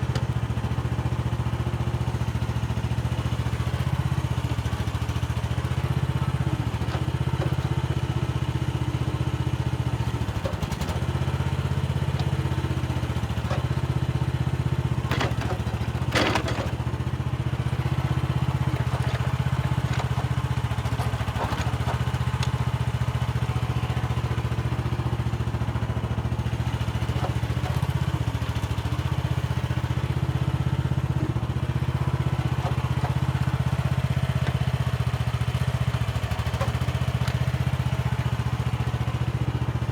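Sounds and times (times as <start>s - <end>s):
excavator engine running: 0.0s - 39.9s
clatter of knocks: 15.0s - 16.8s, 18.6s - 22.7s.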